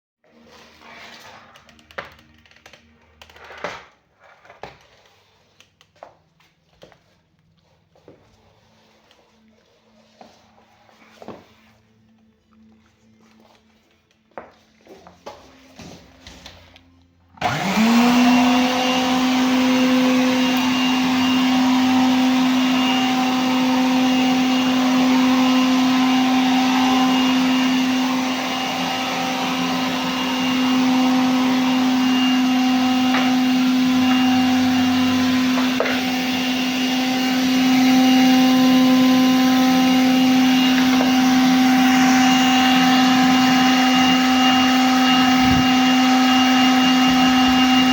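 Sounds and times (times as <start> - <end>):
vacuum cleaner motor whining: 17.4 - 47.9.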